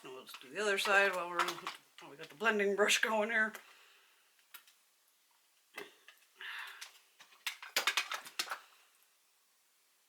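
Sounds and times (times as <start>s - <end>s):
makeup clicks and taps: 0.3s - 2.4s.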